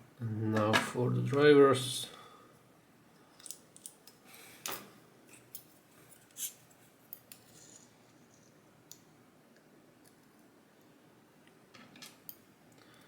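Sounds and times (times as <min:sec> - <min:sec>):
small steel tools clicking: 0:03.4 - 0:07.9.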